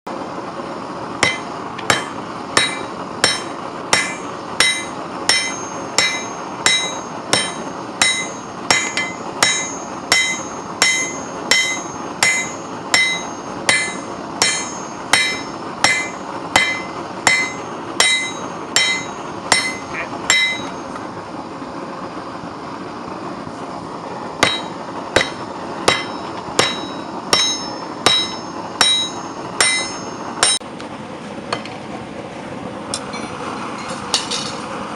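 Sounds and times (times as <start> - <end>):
hammer striking steel on anvil: 1.2 - 21.0, 24.4 - 30.6, 32.9 - 34.6.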